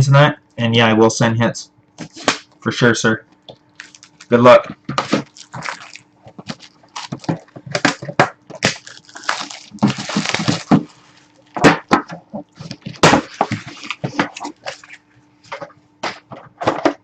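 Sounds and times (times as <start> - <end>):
wrapper crinkling and tearing: 3.6 - 4.4, 5.0 - 11.6.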